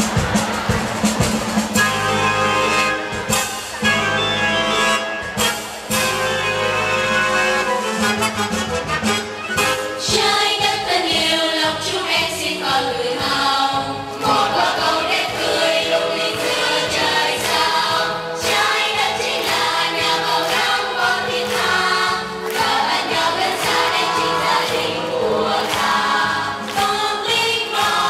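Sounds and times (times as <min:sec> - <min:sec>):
choir singing in parts: 0:10.0 - 0:28.0.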